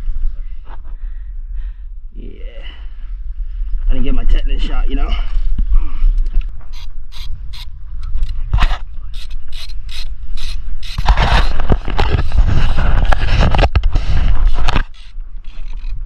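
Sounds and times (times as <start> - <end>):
ratchet clicks: 9.1 - 11.1, 14.6 - 16.0.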